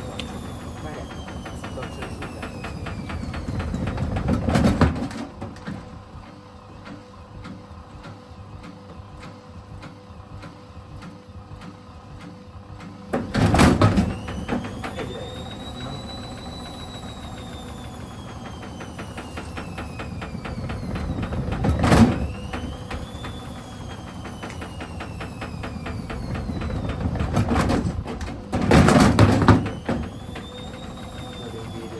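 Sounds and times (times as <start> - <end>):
washing machine drum rattling: 0.0 - 6.2, 12.8 - 31.9
motor whine: 0.0 - 7.5, 13.1 - 31.9
wet clothes banging in drum: 25.7 - 30.1.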